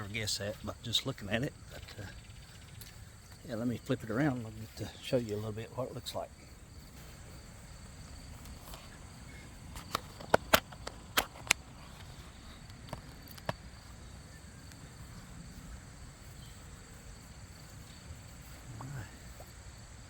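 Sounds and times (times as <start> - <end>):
high insect trilling: 0.0 - 20.0
camera handling clicks and knocks: 9.7 - 13.6.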